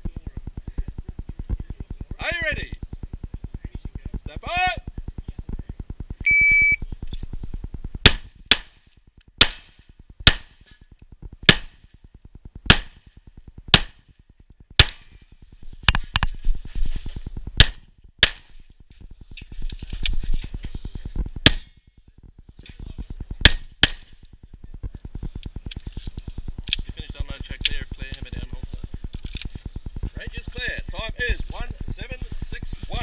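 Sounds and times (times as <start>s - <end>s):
shot timer beep: 6.2s - 6.8s
pistol shots: 8.0s - 8.8s, 11.5s - 11.8s, 14.8s - 15.2s, 23.4s - 24.1s.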